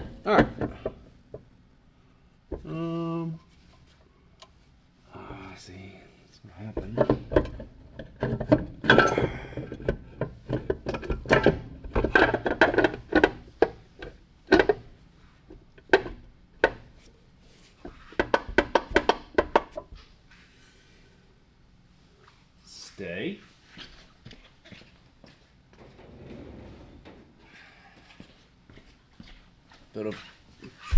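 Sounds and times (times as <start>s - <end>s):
metal parts clanking: 8.8s - 9.8s.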